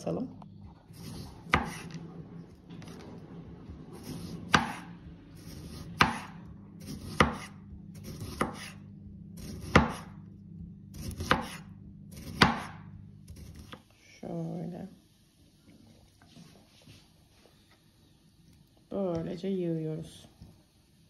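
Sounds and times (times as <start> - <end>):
knife chopping on cutting board: 1.0 - 2.0, 4.0 - 8.8, 9.4 - 10.2, 10.9 - 13.8.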